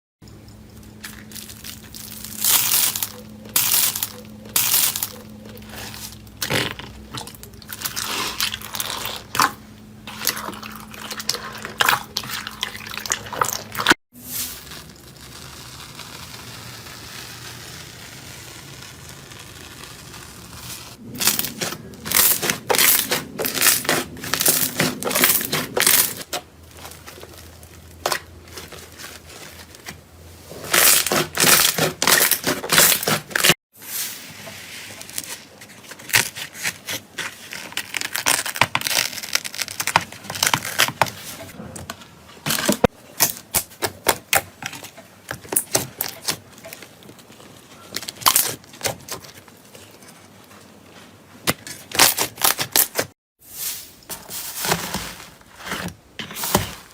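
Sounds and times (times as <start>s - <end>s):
slime crackling and squelching: 1.0s - 33.6s.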